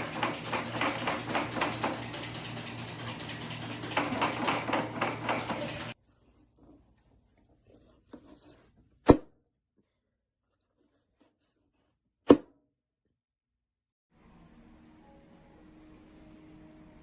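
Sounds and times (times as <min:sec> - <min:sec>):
faint handling sounds: 0:06.0 - 0:09.0.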